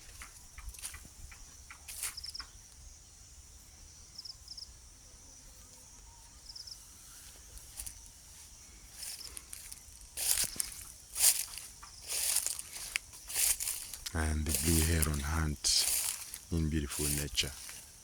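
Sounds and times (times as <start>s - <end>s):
rustling: 9.0s - 18.0s.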